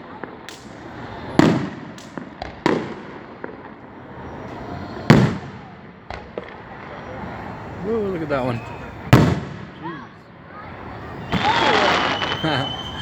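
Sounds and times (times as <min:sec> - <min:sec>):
fireworks shells bursting: 0:11.2 - 0:13.0.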